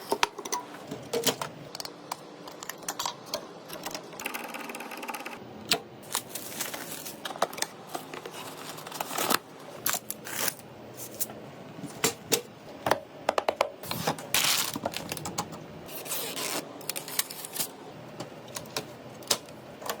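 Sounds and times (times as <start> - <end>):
rustling scrape: 6.1 - 7.3, 7.9 - 9.4.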